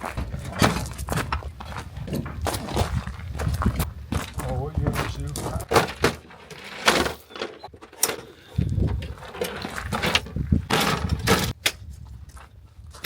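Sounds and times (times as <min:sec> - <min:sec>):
sharp knocks and clattering: 0:00.0 - 0:03.0, 0:03.7 - 0:08.3.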